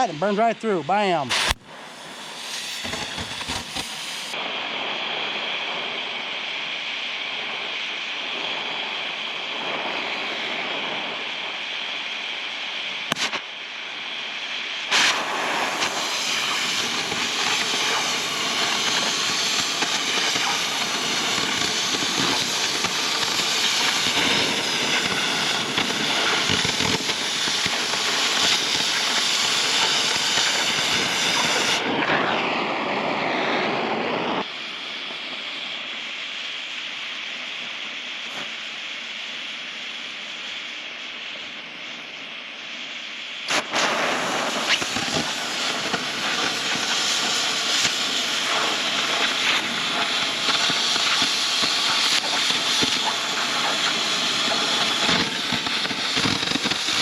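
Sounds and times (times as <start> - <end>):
cutting torch hissing: 0.0 - 57.0
sharp pop: 1.3 - 1.7, 13.1 - 13.4.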